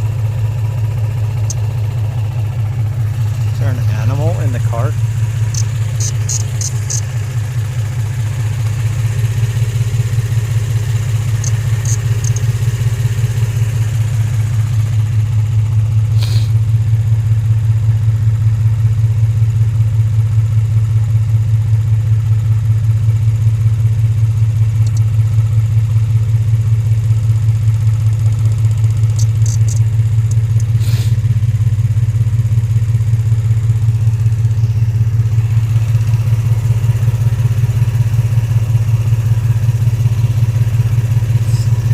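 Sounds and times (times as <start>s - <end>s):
car engine idling: 0.0s - 41.9s
light clicks: 24.8s - 25.1s.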